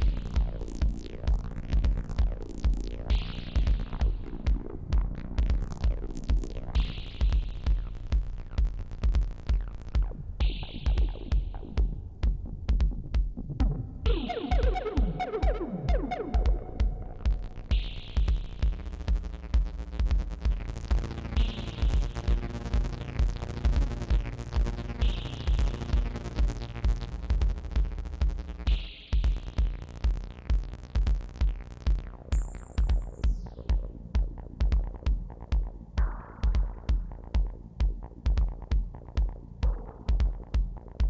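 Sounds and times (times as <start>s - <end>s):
drum machine kick: 0.0s - 41.0s
synthesizer chords: 10.0s - 12.3s, 13.5s - 19.5s.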